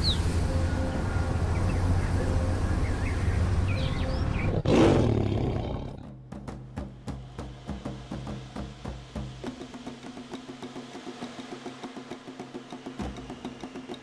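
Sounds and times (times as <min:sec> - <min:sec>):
birds chirping: 0:00.0 - 0:06.1
loud animal roar: 0:04.5 - 0:06.0.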